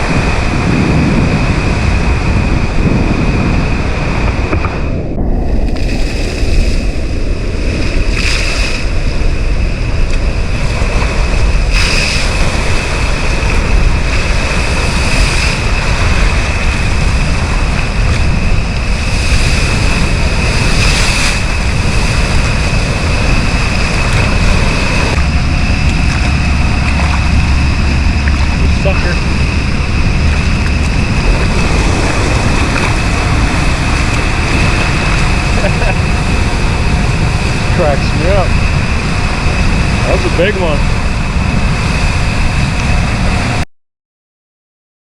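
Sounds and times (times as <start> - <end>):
floodwater rushing loudly: 0.0 - 43.6
wind buffeting microphone: 0.0 - 43.6.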